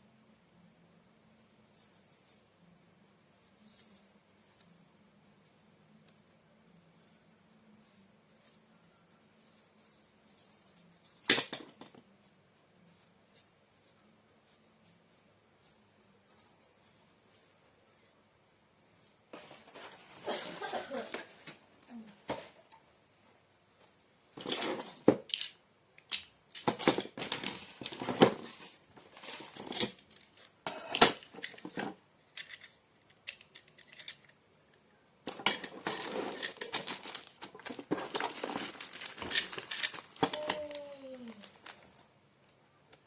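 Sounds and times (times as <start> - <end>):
metal parts clinking: 24.4 - 34.4, 35.3 - 40.5.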